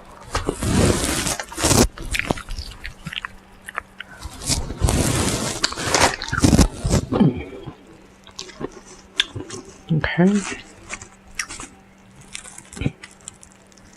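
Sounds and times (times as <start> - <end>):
crunching and chewing fried chicken: 0.3 - 4.9, 5.5 - 13.9.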